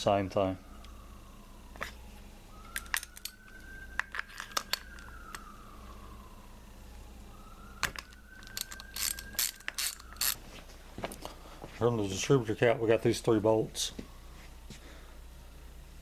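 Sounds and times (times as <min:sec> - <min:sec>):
ratchet and socket metal clicks: 0:08.4 - 0:10.4.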